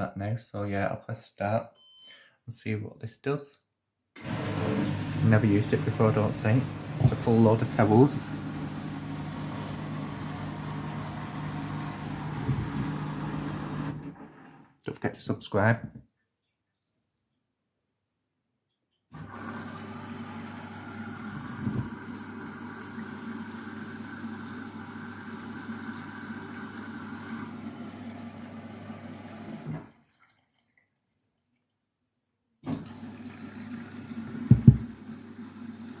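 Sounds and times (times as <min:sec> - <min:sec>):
low machine hum: 0:04.2 - 0:14.0
water rushing into washing machine: 0:04.2 - 0:14.8, 0:19.2 - 0:31.2, 0:32.6 - 0:36.0
thumps: 0:34.5 - 0:35.0.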